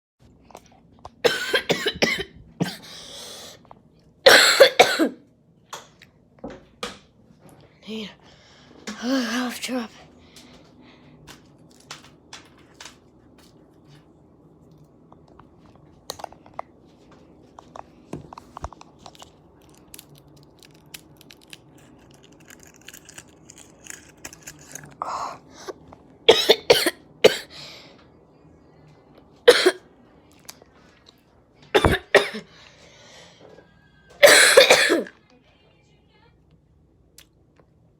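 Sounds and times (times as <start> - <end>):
person coughing: 1.2 - 3.0, 4.3 - 5.2, 26.3 - 27.5, 29.5 - 29.8, 31.8 - 32.5, 34.2 - 35.2.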